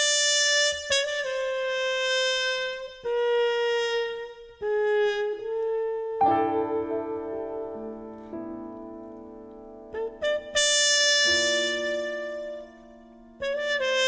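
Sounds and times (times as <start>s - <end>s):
slow held-note music: 6.1s - 14.0s.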